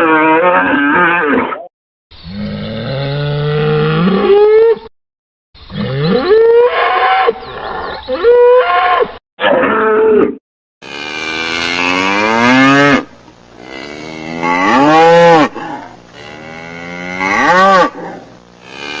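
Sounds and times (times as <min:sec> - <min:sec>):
cattle mooing: 0:10.8 - 0:19.0.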